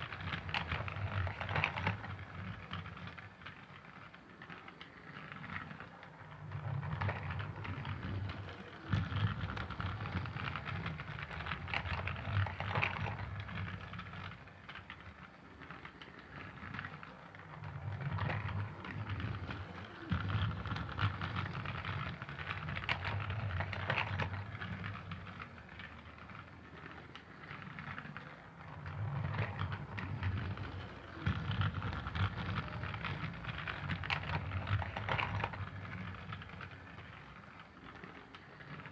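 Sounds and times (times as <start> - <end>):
toy train clicking and rattling: 0.0 - 38.9
toy train motor hum: 0.0 - 38.9.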